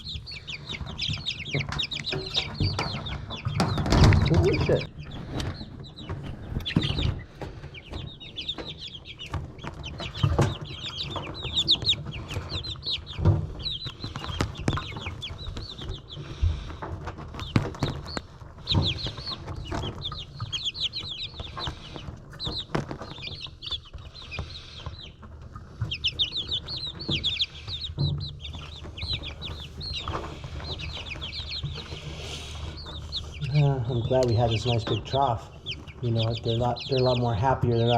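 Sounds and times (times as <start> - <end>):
baby chicks peeping: 0.0 - 37.9.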